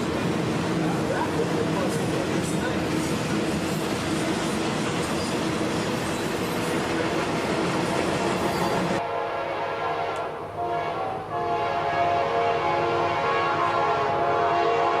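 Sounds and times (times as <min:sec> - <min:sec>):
freight train cars rolling: 0:00.0 - 0:09.0
locomotive horn chord: 0:09.0 - 0:15.0.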